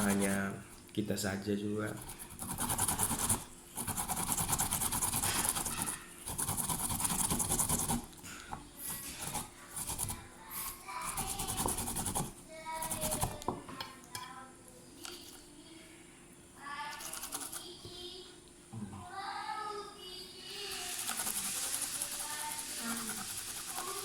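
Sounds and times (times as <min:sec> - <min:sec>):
ginger grated by hand: 0:00.0 - 0:00.6, 0:01.9 - 0:08.2, 0:08.8 - 0:13.4, 0:16.9 - 0:17.8, 0:20.5 - 0:24.0.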